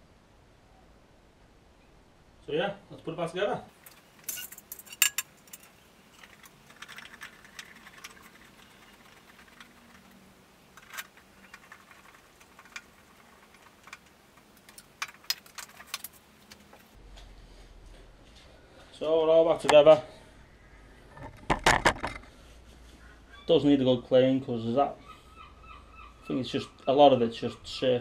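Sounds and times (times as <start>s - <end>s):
metallic clinks of parts: 3.8s - 10.2s.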